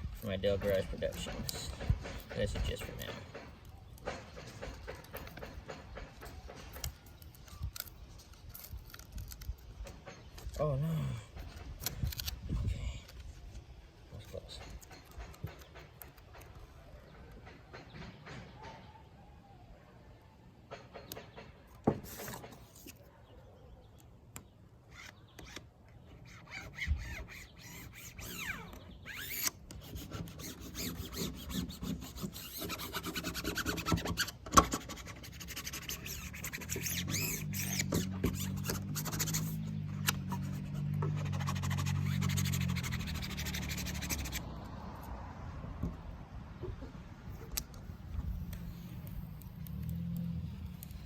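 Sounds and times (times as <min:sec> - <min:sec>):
sticker rubbing and scraping: 0:21.9 - 0:23.0, 0:26.2 - 0:44.4.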